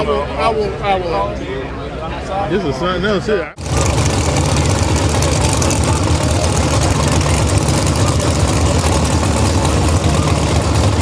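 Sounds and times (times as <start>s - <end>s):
car engine rumbling: 3.5s - 11.0s.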